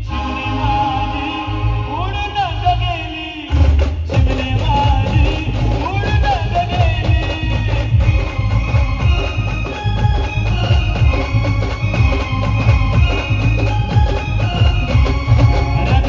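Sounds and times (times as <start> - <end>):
sustained melody lines: 0.0 - 2.9, 4.2 - 16.0
person singing: 0.0 - 9.3
heavy steady drum beat: 3.5 - 16.0.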